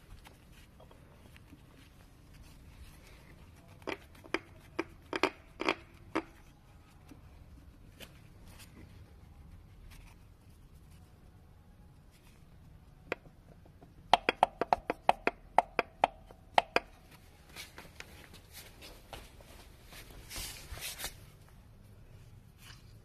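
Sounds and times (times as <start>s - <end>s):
faint low hum: 0.0s - 14.2s.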